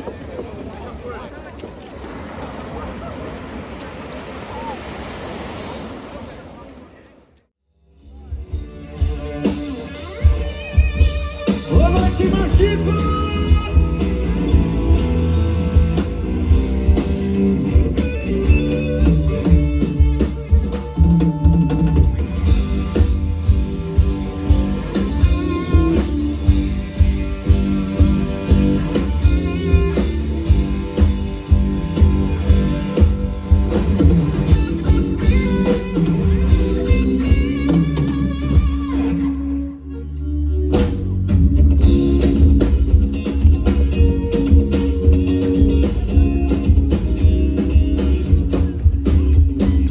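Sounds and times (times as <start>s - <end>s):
live band playing: 8.0s - 49.9s.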